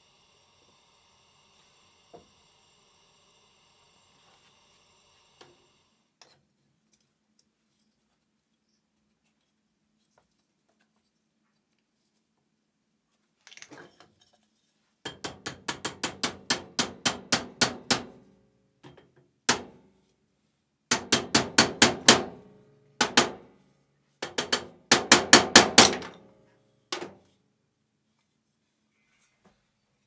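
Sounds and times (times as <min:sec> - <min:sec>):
hammer blows ringing: 0:20.9 - 0:22.4.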